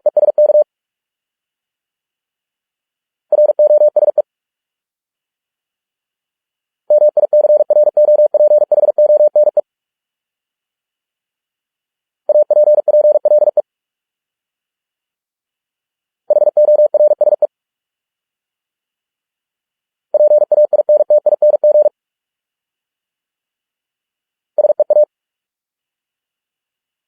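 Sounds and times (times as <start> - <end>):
morse code tone: 12.3 - 13.6, 20.2 - 21.9.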